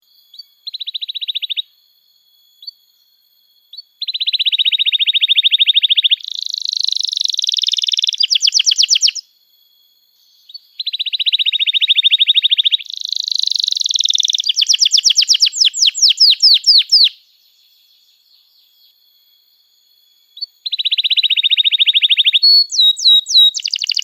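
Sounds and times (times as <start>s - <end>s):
canary chirp: 0.3s - 1.6s, 3.7s - 9.2s, 10.5s - 17.2s, 20.4s - 24.0s
canary singing trills: 0.3s - 1.7s, 3.7s - 9.2s, 10.4s - 19.1s, 20.3s - 24.0s.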